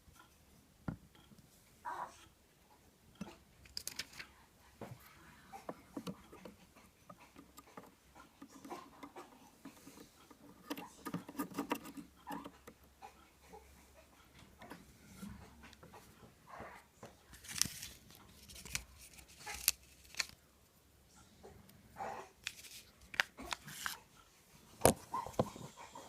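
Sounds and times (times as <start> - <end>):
small hard parts clicking: 3.1 - 4.3, 5.6 - 13.0.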